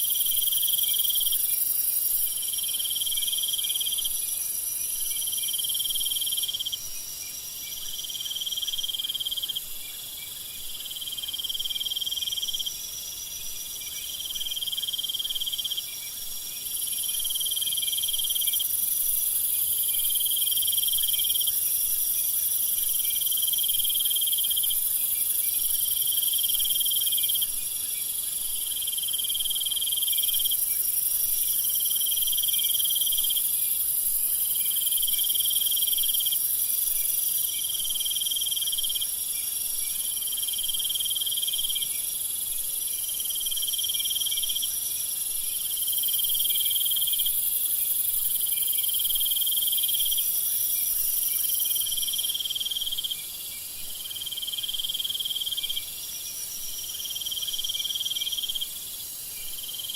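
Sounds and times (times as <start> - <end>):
cricket trills: 0.0 - 59.9.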